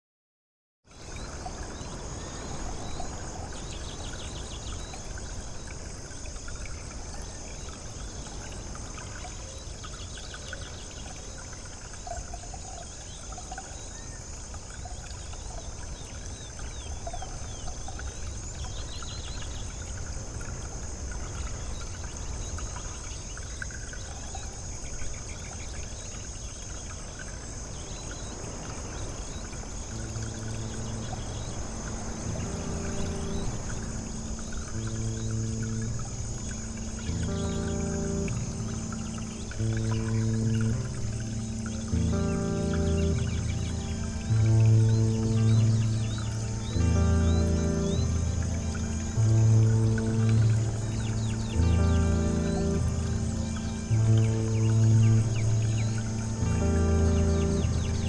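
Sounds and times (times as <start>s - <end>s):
birds chirping and trilling: 0.9s - 58.0s.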